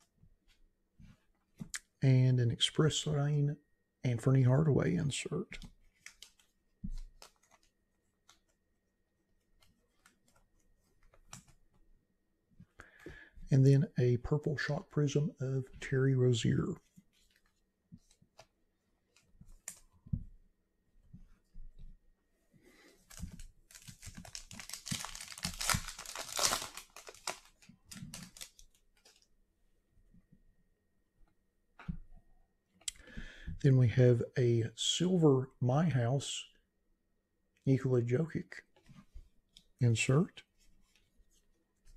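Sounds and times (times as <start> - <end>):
trading cards rustling and clicking: 5.6 - 8.6, 9.6 - 11.6, 22.7 - 29.2
foil wrapper crinkling: 23.1 - 29.2.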